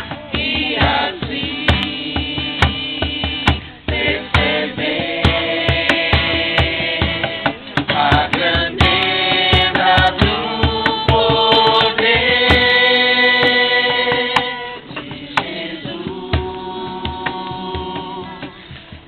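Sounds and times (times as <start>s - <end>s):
steady drum beat: 0.0s - 19.0s
worship singing with instruments: 0.0s - 19.0s.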